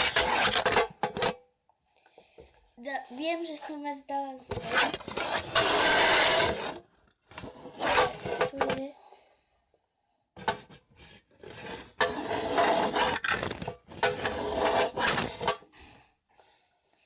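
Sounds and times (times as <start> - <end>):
container rustling and clattering: 13.0 - 14.3.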